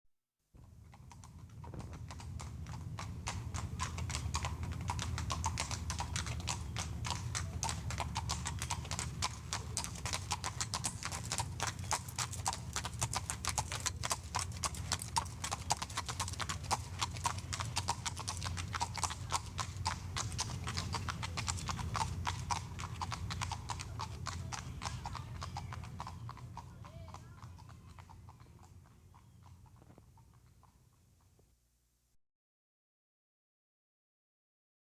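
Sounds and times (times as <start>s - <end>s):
hooves clip-clopping on concrete: 0.6s - 31.5s
low steady rumble: 0.6s - 31.6s.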